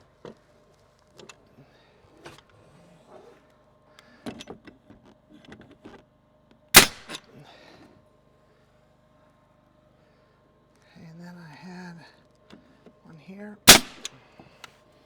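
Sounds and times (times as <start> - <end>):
nail gun firing: 6.8 - 7.2, 13.7 - 14.1.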